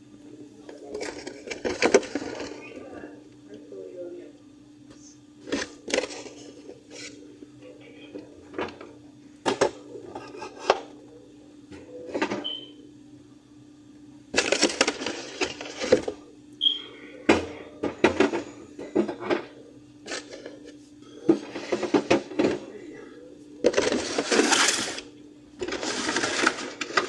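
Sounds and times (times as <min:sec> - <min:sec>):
steady low hum: 0:00.0 - 0:27.0
rattling clatter of cans: 0:14.4 - 0:16.2, 0:23.6 - 0:25.0, 0:25.6 - 0:27.0.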